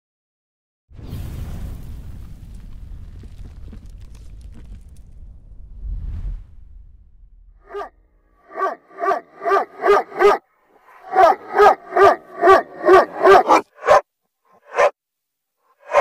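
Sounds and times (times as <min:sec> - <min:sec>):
reversed dog barks: 0:07.6 - 0:15.0, 0:15.7 - 0:16.0.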